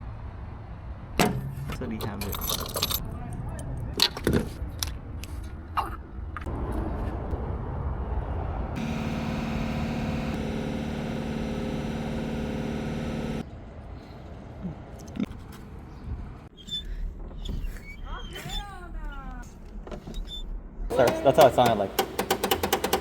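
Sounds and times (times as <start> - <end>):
starter motor whine: 8.8 - 13.4.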